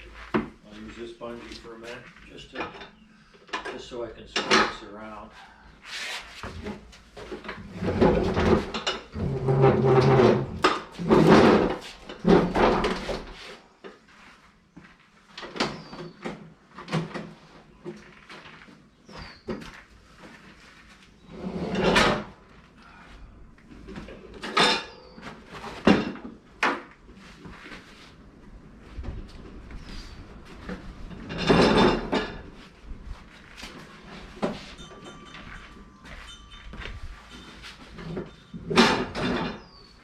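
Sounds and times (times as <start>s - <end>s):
mower deck scraping on floor: 5.9s - 13.5s, 21.2s - 22.3s
metal clanking and knocks: 31.1s - 32.6s, 34.0s - 40.0s.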